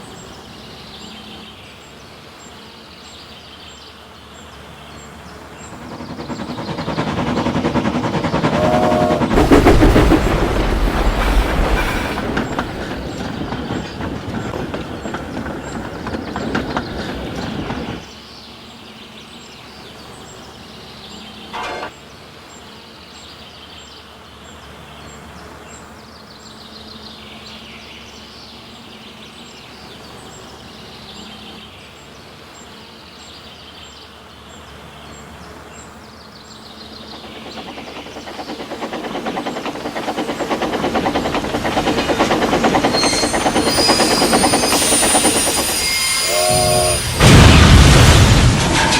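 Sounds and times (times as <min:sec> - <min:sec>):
moving train: 0:00.0 - 0:23.5, 0:24.1 - 0:48.9
loud burst: 0:05.8 - 0:12.8, 0:41.0 - 0:48.9.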